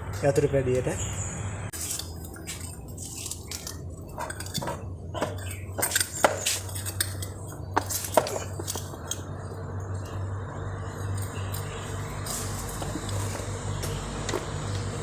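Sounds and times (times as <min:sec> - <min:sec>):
steady low hum: 0:00.0 - 0:15.0
metal parts clinking: 0:01.8 - 0:04.7, 0:05.4 - 0:09.3.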